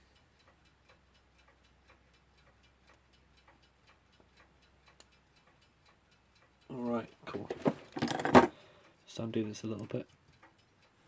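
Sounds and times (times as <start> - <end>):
alarm clock ticking: 0.0 - 7.4.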